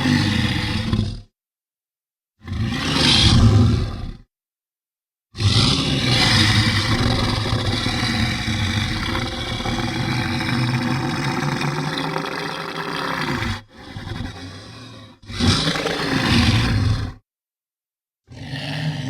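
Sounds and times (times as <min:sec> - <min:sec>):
monster growling: 0:02.4 - 0:04.2, 0:05.4 - 0:17.2, 0:18.3 - 0:19.0.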